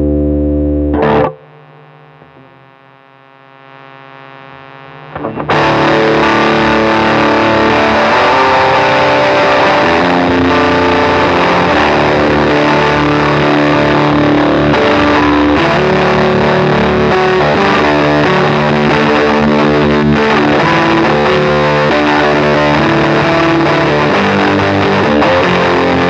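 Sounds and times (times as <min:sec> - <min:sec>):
distorted electric guitar: 0:00.0 - 0:26.0.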